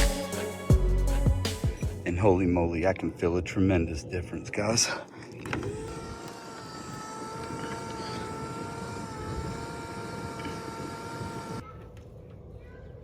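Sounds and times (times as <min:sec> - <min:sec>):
clothes dryer blower rushing air: 0:05.5 - 0:11.6.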